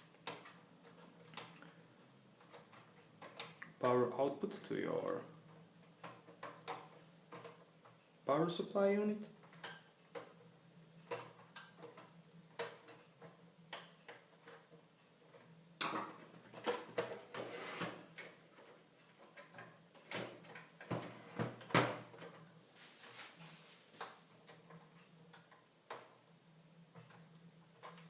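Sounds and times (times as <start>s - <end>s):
scraping rustle: 17.1s - 18.3s, 22.7s - 24.7s.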